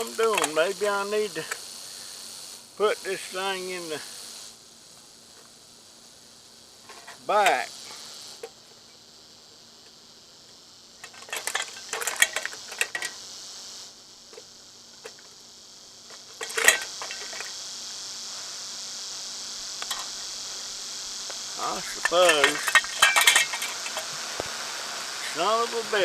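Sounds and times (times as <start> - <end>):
katydids buzzing: 0.0 - 26.0
metal parts clinking: 11.0 - 13.2, 16.1 - 17.5, 19.8 - 20.2, 21.9 - 24.2
loud metal clank: 22.0 - 24.1.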